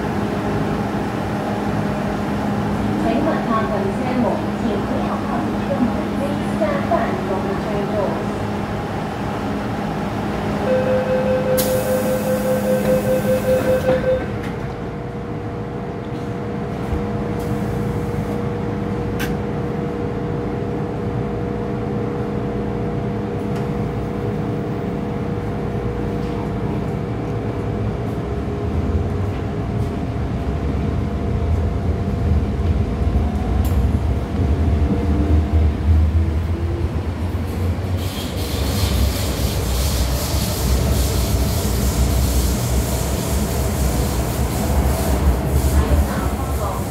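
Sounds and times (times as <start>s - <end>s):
door-closing warning beeps: 10.7s - 14.5s
train doors hissing shut: 11.5s - 14.4s, 37.9s - 46.9s
train wheels rumbling: 23.4s - 46.9s.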